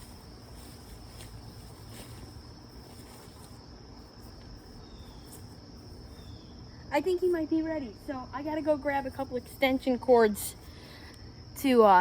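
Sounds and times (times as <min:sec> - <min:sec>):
crickets trilling: 0:00.0 - 0:12.0.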